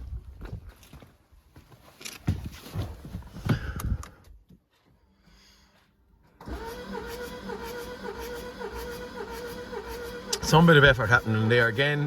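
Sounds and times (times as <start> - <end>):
starter motor cranking engine: 6.4 - 12.0.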